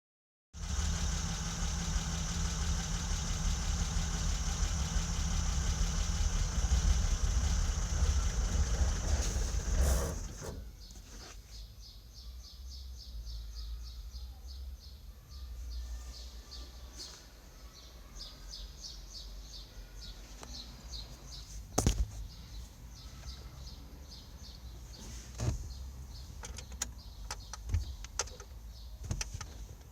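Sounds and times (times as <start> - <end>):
car engine running: 0.6 - 10.7.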